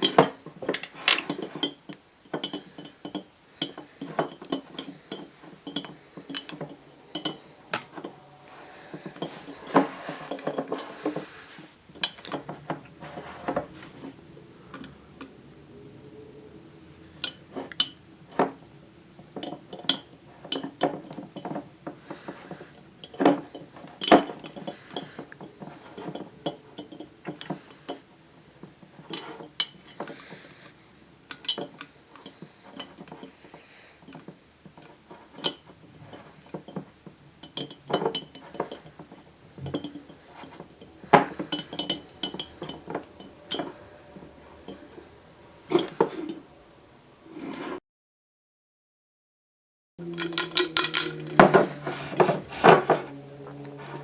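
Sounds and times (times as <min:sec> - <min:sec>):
plastic pieces clicking against glass jar: 0:50.0 - 0:51.6.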